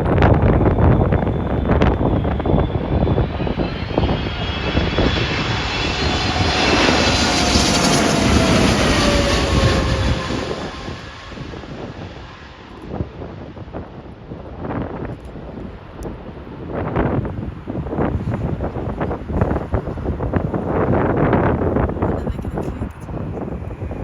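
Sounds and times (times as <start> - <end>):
jet airliner passing overhead: 0.0 - 24.0
wind buffeting microphone: 0.0 - 24.0.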